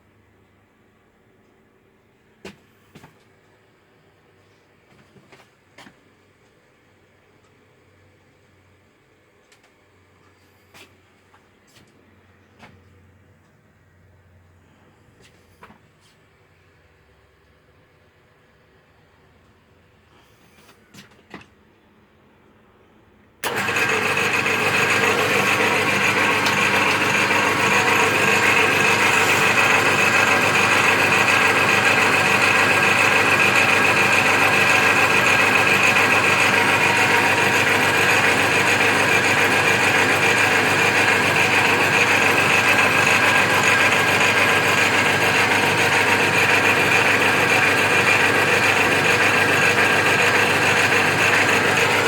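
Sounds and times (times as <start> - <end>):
lathe motor whining: 23.4 - 52.0.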